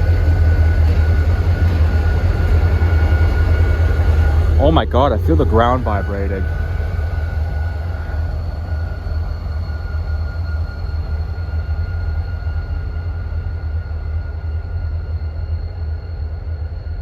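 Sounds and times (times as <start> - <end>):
freight train rumbling past: 0.0 - 17.0.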